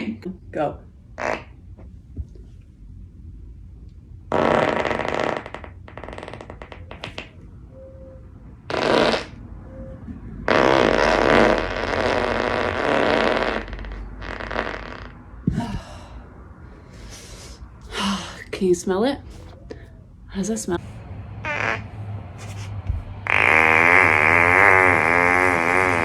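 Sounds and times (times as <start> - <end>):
woman farting: 1.2 - 1.5, 4.3 - 7.3, 8.7 - 9.4, 10.5 - 15.9, 21.4 - 26.0.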